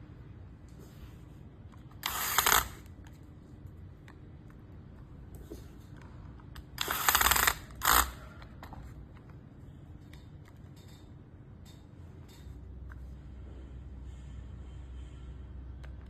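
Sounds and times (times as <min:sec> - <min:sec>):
small electric motor whirring: 0:02.0 - 0:02.8, 0:06.8 - 0:08.2.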